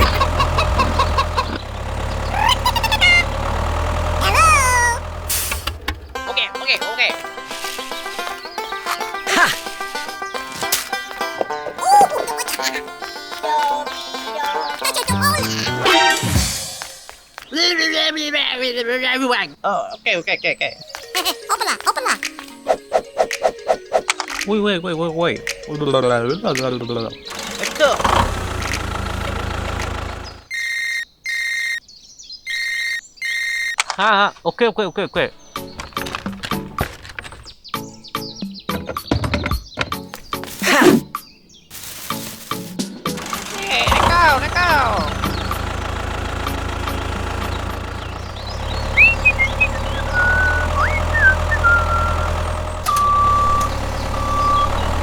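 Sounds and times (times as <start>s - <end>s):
motor running: 0.0s - 8.5s, 27.3s - 30.5s, 41.8s - 55.0s
squeaky whistling chirps: 30.2s - 33.9s, 47.4s - 55.0s
high-pitched electronic beeps: 30.5s - 31.8s, 32.5s - 33.8s
high steady beeping: 52.8s - 54.9s.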